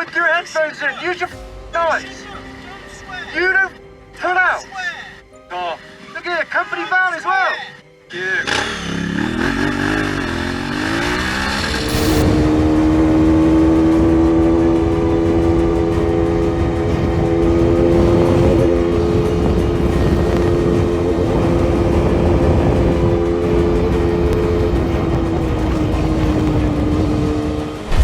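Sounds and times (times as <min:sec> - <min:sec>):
motorcycle engine revving: 0:08.4 - 0:28.0.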